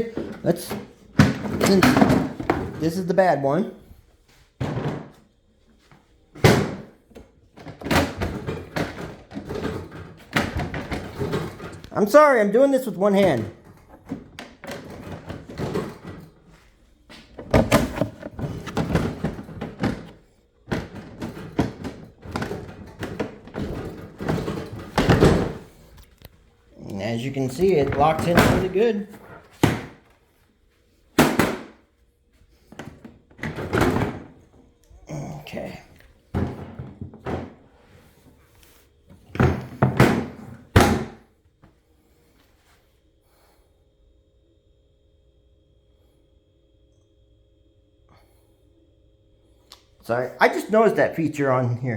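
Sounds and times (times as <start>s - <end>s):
plastic tool box thunks and clicks: 0.0s - 2.9s, 4.6s - 5.2s, 6.4s - 12.0s, 13.2s - 16.4s, 17.1s - 26.1s, 27.5s - 30.1s, 31.2s - 31.8s, 32.7s - 34.5s, 39.1s - 41.2s.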